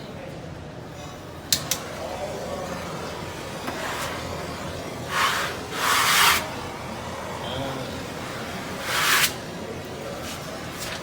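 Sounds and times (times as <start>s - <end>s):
wallpaper rustling: 10.2s - 11.0s.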